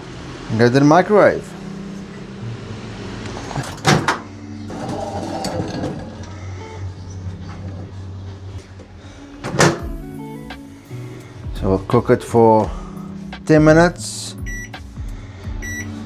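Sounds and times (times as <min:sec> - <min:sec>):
loud clunk: 0:03.6 - 0:06.4, 0:09.4 - 0:09.9.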